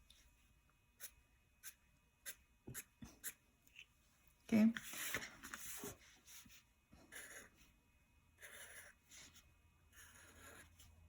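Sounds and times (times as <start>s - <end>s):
marker scratching on paper: 1.0s - 3.4s, 4.8s - 7.6s, 8.4s - 10.9s.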